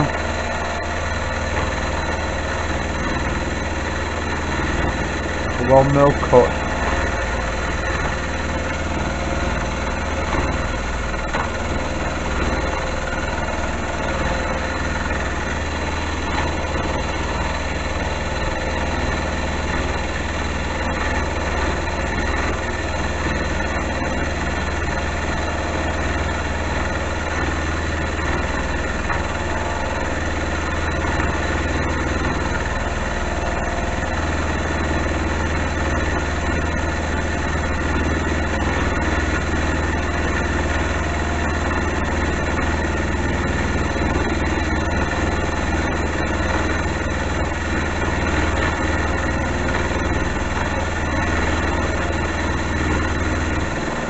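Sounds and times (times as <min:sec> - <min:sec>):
lathe humming: 0:00.0 - 0:54.0.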